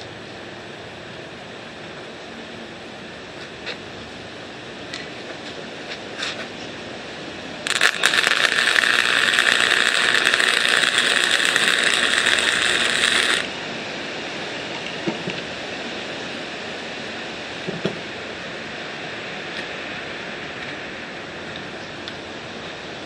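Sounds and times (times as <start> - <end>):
wind hiss: 6.1 - 14.7
electric welder crackling buzz: 7.6 - 13.6.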